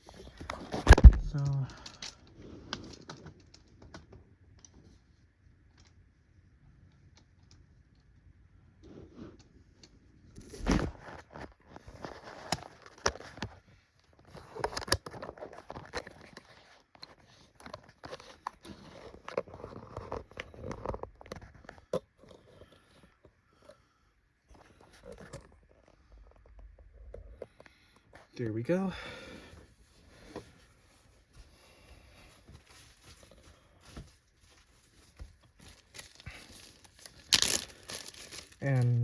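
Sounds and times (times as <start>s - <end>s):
plastic housing clicks and scrapes: 14.2s - 23.3s.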